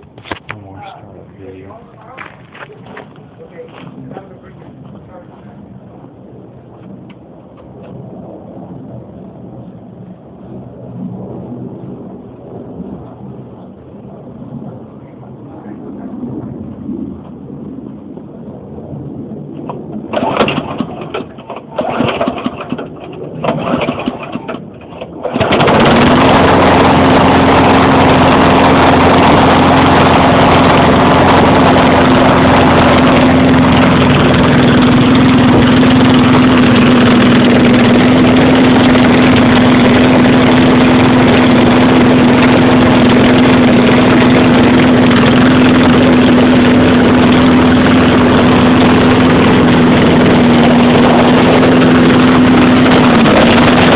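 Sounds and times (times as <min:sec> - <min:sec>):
person talking: 0:00.5 - 0:05.7
lawn mower engine starting and running: 0:19.9 - 0:53.9.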